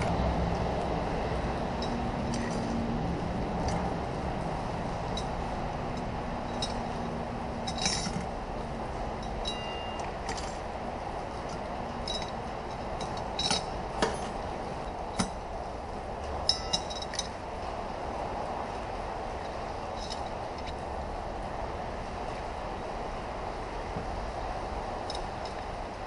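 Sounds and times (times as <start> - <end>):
steady background hum: 0.0 - 26.0
light metallic clinks: 7.6 - 8.3, 9.2 - 10.7, 12.0 - 15.4, 16.4 - 17.4.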